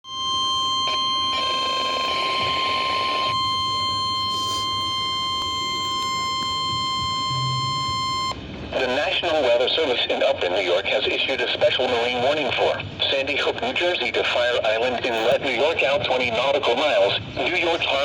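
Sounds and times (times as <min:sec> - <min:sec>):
warning alarm tone beep: 0:00.0 - 0:08.4.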